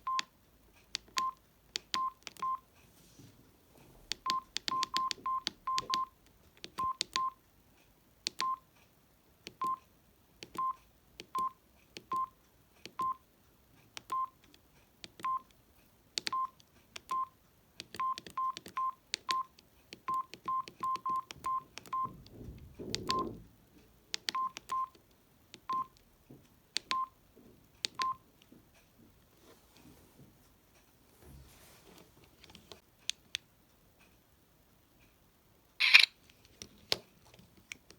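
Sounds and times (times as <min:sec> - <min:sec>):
phone keypad beeps: 0:00.0 - 0:00.3, 0:01.1 - 0:02.6, 0:04.2 - 0:06.2, 0:06.8 - 0:07.4, 0:08.3 - 0:08.6, 0:09.6 - 0:09.8, 0:10.5 - 0:13.2, 0:14.0 - 0:14.4, 0:15.2 - 0:15.5, 0:16.2 - 0:22.2, 0:23.0 - 0:23.4, 0:24.3 - 0:25.0, 0:25.6 - 0:26.0, 0:26.8 - 0:27.2, 0:27.9 - 0:28.2, 0:35.8 - 0:36.1
phone key clicks: 0:35.8 - 0:36.1.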